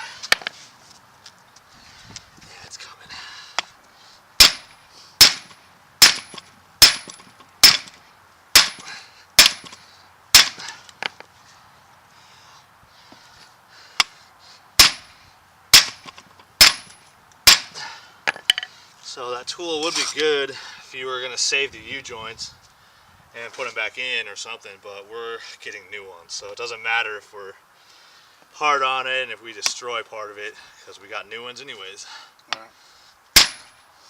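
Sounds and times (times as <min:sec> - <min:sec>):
hammer striking steel: 0:04.4 - 0:07.9, 0:08.6 - 0:09.8, 0:14.8 - 0:15.1, 0:15.8 - 0:17.7, 0:33.4 - 0:33.8.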